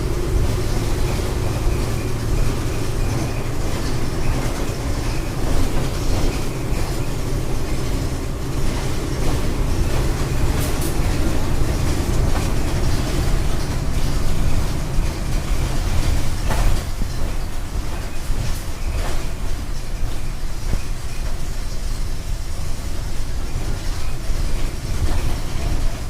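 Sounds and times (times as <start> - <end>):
diesel bus rumble: 0.0 - 26.0
road noise: 0.0 - 26.0.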